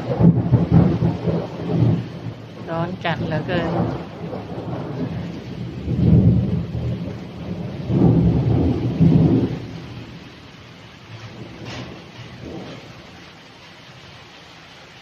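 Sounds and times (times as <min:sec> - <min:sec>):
thunder rumbling: 0:00.0 - 0:14.1
steady rain: 0:00.0 - 0:15.0.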